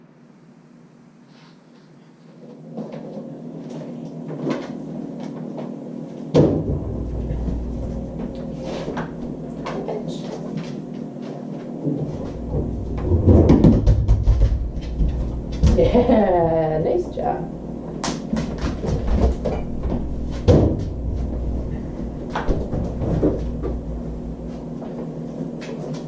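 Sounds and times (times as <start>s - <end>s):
knocks and rattles in fridge: 6.3s - 7.8s, 12.0s - 16.5s, 18.3s - 21.3s, 22.3s - 23.8s
low rumble: 6.6s - 9.8s, 19.0s - 24.8s.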